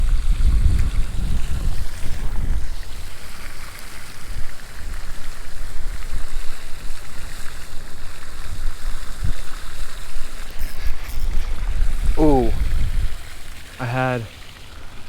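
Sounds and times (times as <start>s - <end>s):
wind buffeting microphone: 0.0s - 2.8s.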